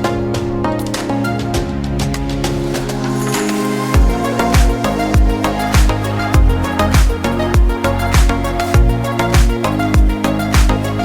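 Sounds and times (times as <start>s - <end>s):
held synth chords: 0.0s - 11.0s
deep kick drum beat: 4.0s - 10.9s.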